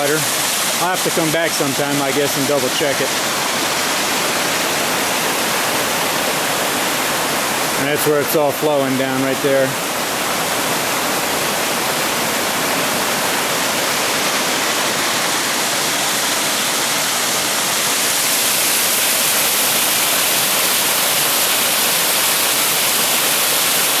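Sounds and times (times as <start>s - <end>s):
creek rushing over rocks: 0.0s - 24.0s.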